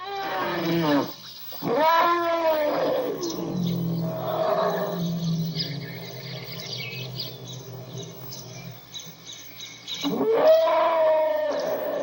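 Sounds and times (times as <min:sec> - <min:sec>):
elephant trumpeting: 0:00.0 - 0:08.9, 0:10.0 - 0:12.0
low hum: 0:03.4 - 0:09.3.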